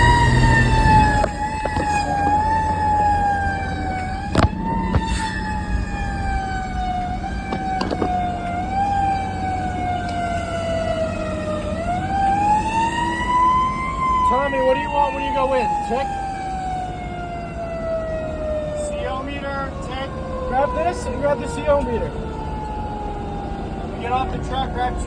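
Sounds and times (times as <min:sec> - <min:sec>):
truck engine running: 0:00.0 - 0:13.0
fire engine siren wailing: 0:00.0 - 0:25.0.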